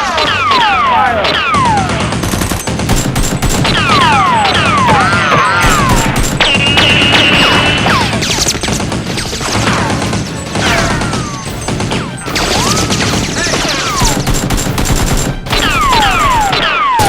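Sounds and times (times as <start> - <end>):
rapid gunfire: 0.0 - 17.0
falling whines of ricochets: 12.4 - 13.2.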